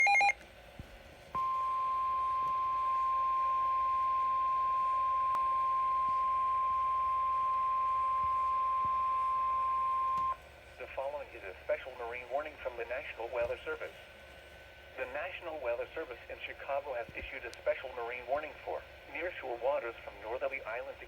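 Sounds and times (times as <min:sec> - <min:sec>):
steady alarm tone: 0:00.0 - 0:00.3
faint radio hiss: 0:10.2 - 0:21.0.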